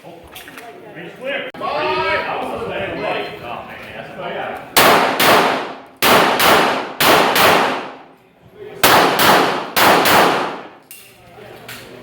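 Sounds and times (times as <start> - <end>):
pistol shots with echo: 4.8 - 8.1, 8.8 - 10.8.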